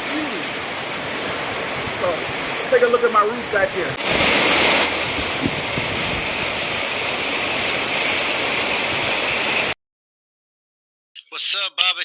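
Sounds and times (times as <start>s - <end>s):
heavy rain pouring: 0.0s - 9.7s.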